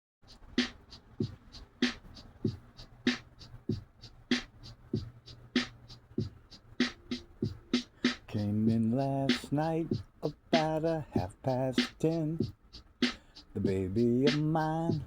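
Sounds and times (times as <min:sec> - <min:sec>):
snare drum: 0:00.3 - 0:15.0
kick drum: 0:11.2 - 0:11.4.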